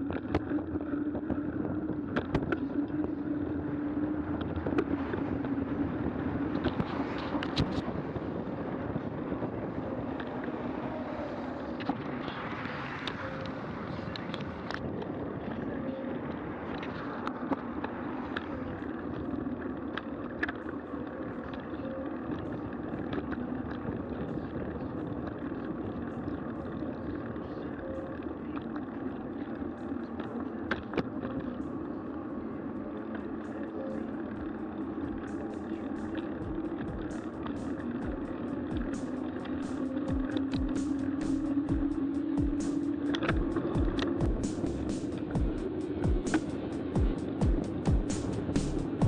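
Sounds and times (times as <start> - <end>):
road and wind noise: 0.0 - 49.0
bicycle clicks and rattles: 16.6 - 28.2.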